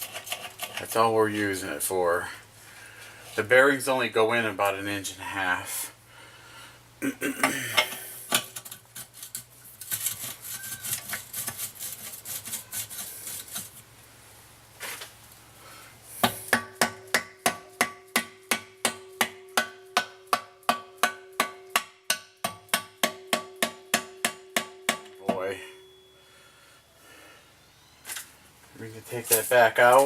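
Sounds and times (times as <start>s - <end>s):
hammer tapping metal: 16.5s - 25.3s.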